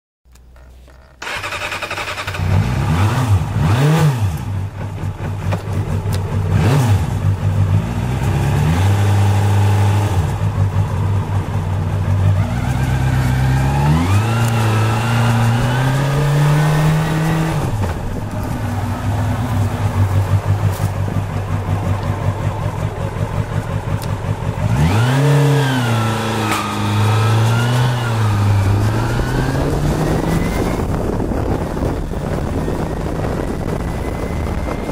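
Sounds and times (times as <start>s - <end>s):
motorcycle engine revving: 0.5s - 34.9s.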